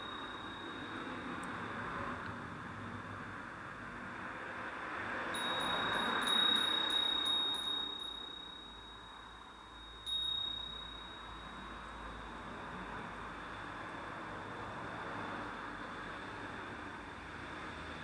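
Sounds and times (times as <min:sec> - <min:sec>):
wind chime ringing: 0:00.0 - 0:02.2, 0:05.3 - 0:13.6.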